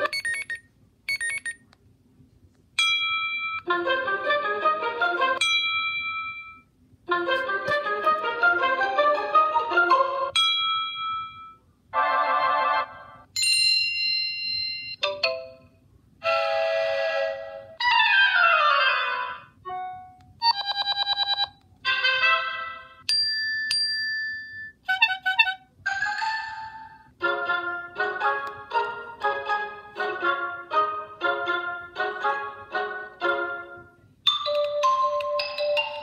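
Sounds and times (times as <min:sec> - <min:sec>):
tablet alert chimes: 0:00.0 - 0:01.6.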